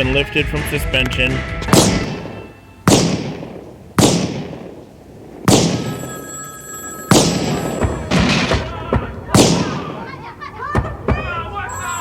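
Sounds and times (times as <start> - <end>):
echoing gunshots: 1.7 - 6.1, 7.1 - 10.3
telephone ringing: 5.8 - 8.8, 11.6 - 12.0.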